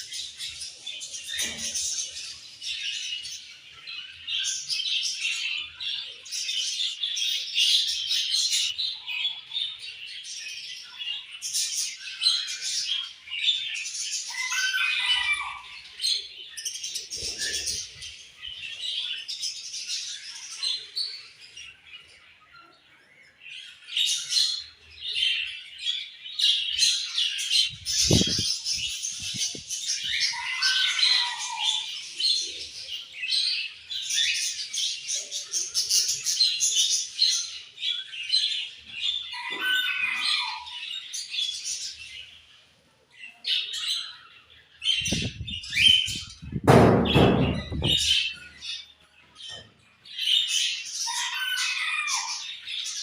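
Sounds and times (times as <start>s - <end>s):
budgerigars chirping and chattering: 0.0s - 53.0s.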